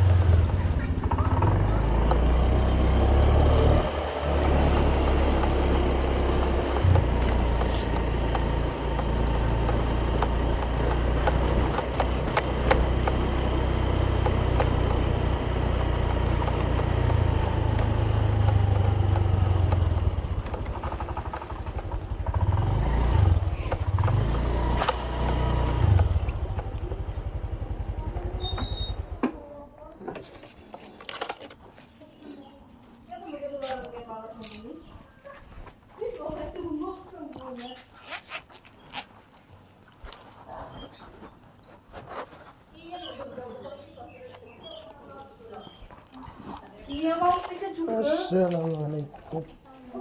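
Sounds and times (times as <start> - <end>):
motor vehicle rumbling: 0.0 - 35.1.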